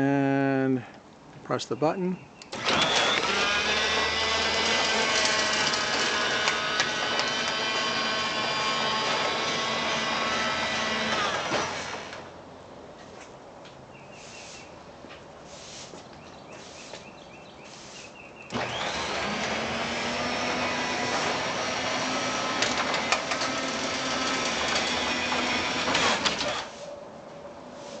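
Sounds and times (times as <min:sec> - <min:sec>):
garage door opener motor whining: 0:02.5 - 0:12.3, 0:18.5 - 0:26.8
garage door clattering: 0:02.6 - 0:12.3, 0:18.5 - 0:26.7.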